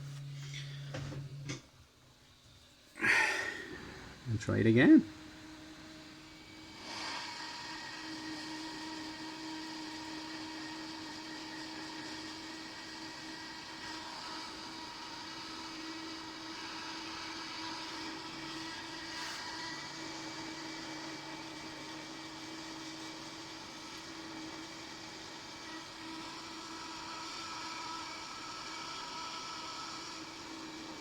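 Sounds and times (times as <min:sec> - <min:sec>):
hot air blower whirring: 0:00.0 - 0:01.6, 0:03.0 - 0:31.0.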